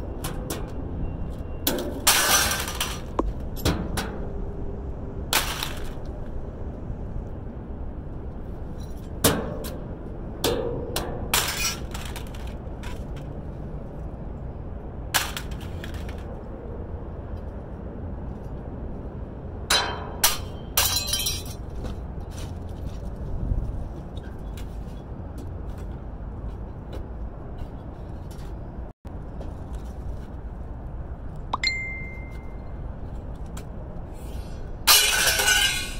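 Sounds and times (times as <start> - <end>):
steady low rumble: 2.0 - 35.9
scrap metal clinking and clattering: 34.9 - 35.9.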